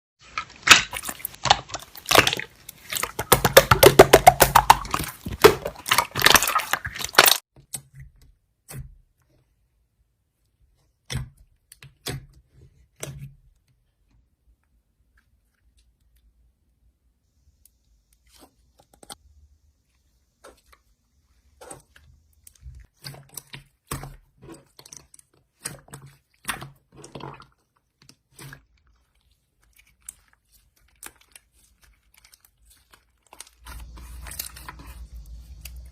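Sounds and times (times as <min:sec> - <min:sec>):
crunching and chewing: 0:24.4 - 0:35.9.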